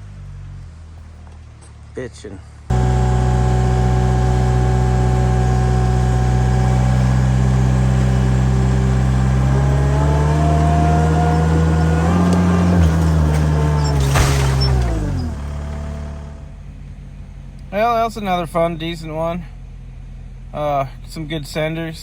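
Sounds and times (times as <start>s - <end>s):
engine running loudly: 2.7s - 16.6s.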